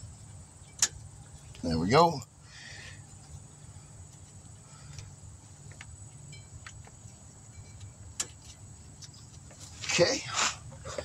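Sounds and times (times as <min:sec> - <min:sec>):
low steady hum: 0:00.0 - 0:11.0
metallic clicks of brake pads: 0:00.6 - 0:01.6, 0:04.0 - 0:10.0.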